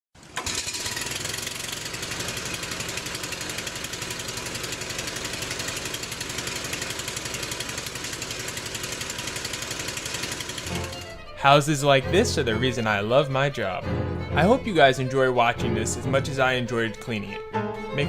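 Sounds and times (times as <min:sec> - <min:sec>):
pressure washer engine throbbing: 0:00.2 - 0:11.3.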